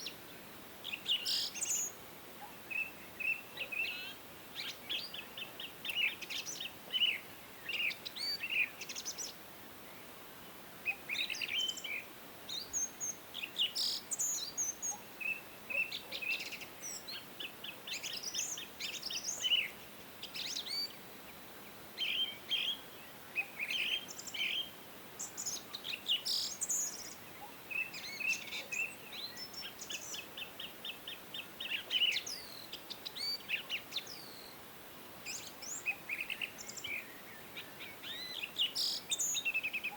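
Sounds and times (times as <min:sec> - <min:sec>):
faint steady hiss: 0:00.0 - 0:39.9
songbirds chirping: 0:00.0 - 0:39.9.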